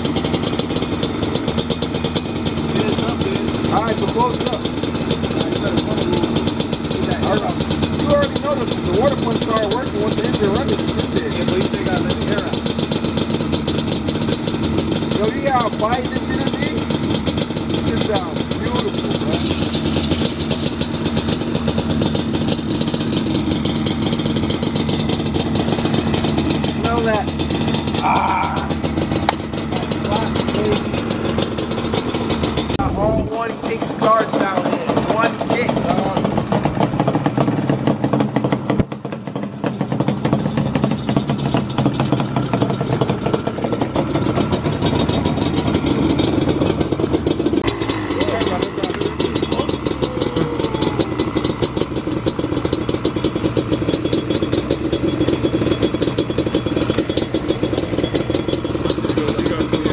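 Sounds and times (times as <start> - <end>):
two-stroke engine idling: 0.0 - 59.9.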